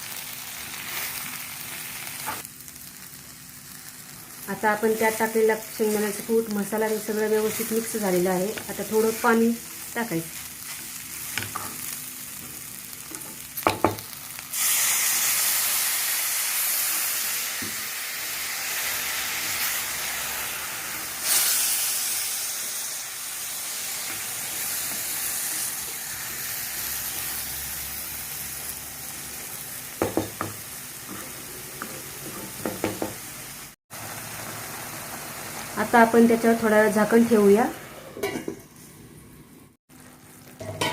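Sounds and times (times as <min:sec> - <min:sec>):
water sizzling in a hot pan: 0:00.0 - 0:38.3, 0:39.9 - 0:40.9
spatula knocking on pan: 0:13.6 - 0:14.0, 0:30.0 - 0:30.6, 0:32.6 - 0:33.2.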